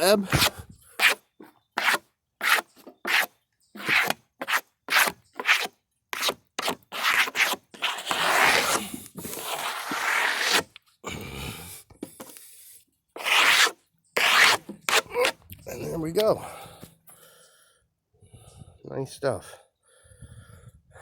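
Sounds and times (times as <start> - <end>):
wooden slabs scraping on wood: 1.8 - 10.7, 13.2 - 15.4.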